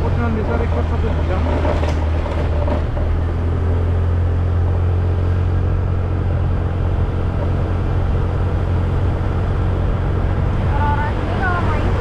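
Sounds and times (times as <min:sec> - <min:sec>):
motorcycle engine rumble: 0:00.0 - 0:12.0
wind noise: 0:04.8 - 0:12.0.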